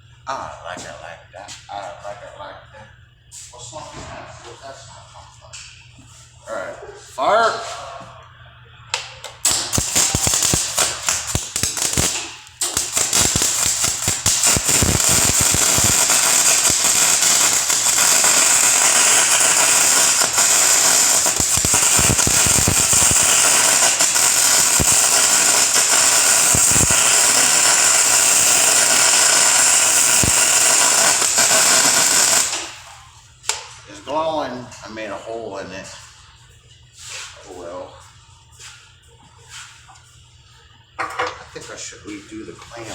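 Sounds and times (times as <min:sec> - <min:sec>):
welding arc crackling: 0:09.4 - 0:33.0.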